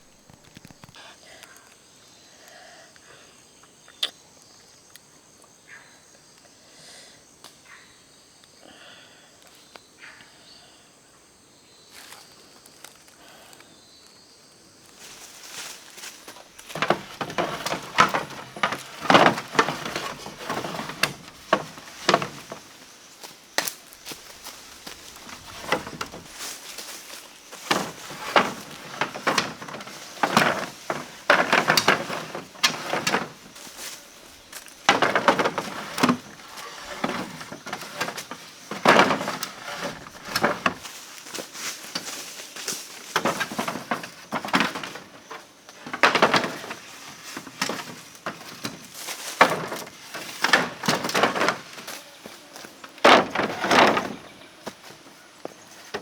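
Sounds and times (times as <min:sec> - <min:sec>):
bamboo and wood knocking and scraping: 0:00.0 - 0:01.0, 0:15.0 - 0:56.0.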